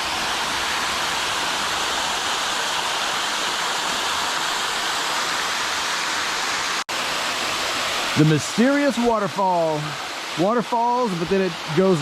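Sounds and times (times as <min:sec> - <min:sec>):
waterfall pouring onto rock: 0:08.0 - 0:12.0.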